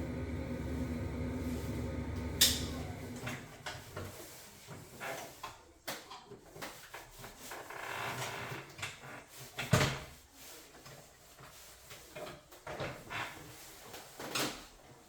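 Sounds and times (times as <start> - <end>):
steady hum: 0.0 - 3.6.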